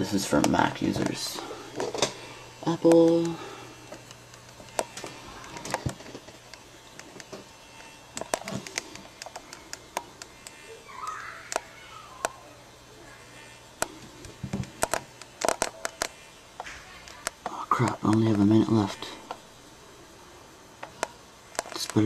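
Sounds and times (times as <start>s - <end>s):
low steady hum: 0.0s - 22.0s
faint clicks and taps: 2.9s - 10.6s, 11.5s - 12.4s, 13.8s - 18.5s, 20.8s - 22.0s.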